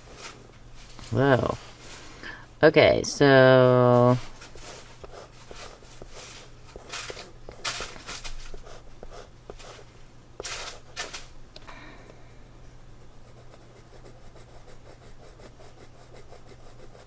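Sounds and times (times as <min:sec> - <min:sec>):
pencil scratching on paper: 0:04.5 - 0:07.8, 0:08.5 - 0:09.8, 0:13.0 - 0:17.0.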